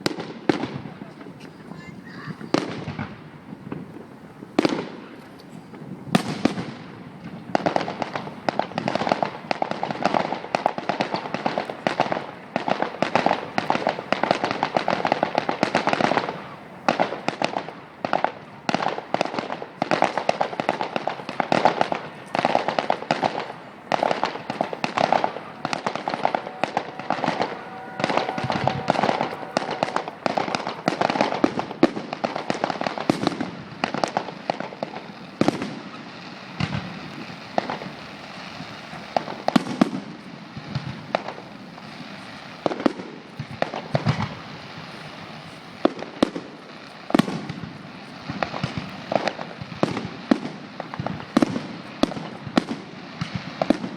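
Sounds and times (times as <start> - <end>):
firework bangs: 0.0 - 53.9
fireworks crackling: 0.0 - 53.9.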